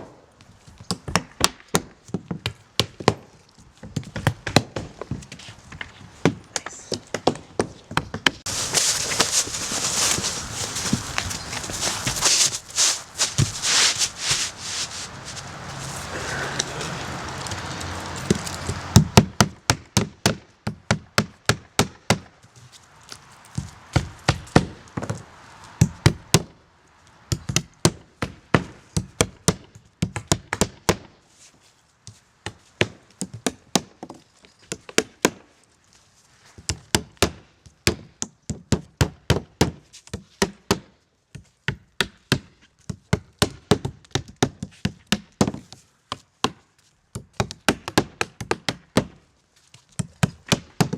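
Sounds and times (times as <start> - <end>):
rustling hiss: 8.5 - 18.9.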